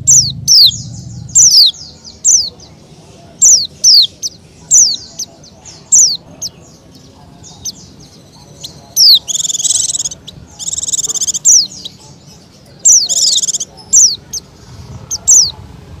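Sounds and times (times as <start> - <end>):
bird rattling trills: 8.6 - 14.1.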